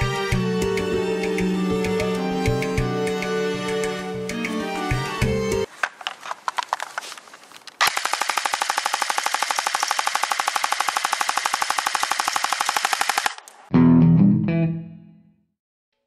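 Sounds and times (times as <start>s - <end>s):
airsoft gun firing: 7.8s - 13.5s.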